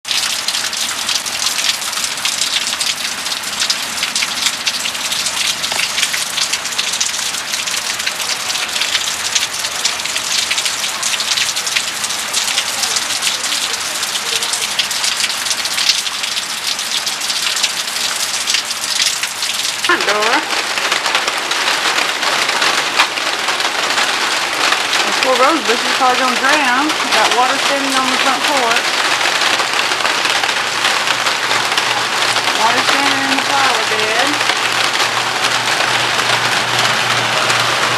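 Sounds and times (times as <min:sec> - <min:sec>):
heavy rain pouring: 0:00.0 - 0:37.9.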